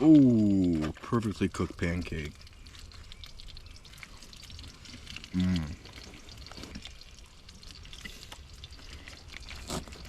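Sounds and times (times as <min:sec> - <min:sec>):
campfire crackling and sizzling: 0:00.0 - 0:10.0
man making low mm sound: 0:05.3 - 0:05.9.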